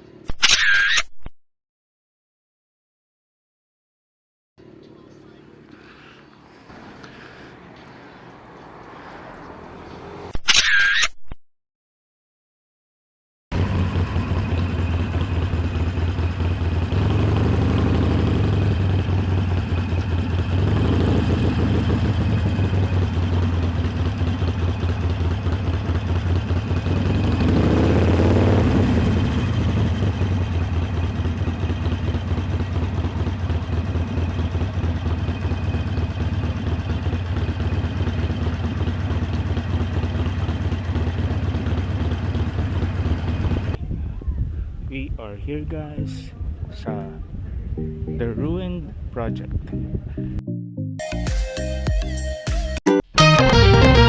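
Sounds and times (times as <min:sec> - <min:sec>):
motorcycle engine running: 0:13.5 - 0:43.8.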